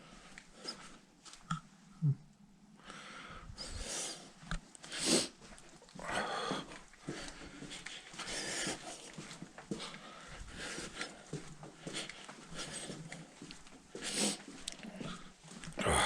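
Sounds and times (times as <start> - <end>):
person breathing heavily: 2.8 - 5.4, 6.0 - 13.4, 14.0 - 16.0.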